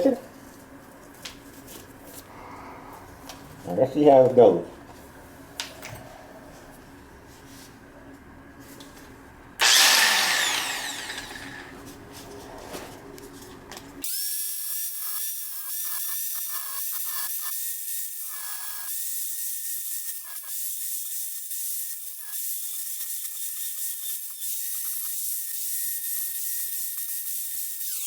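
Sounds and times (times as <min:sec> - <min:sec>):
angle grinder grinding steel: 0:09.6 - 0:11.7.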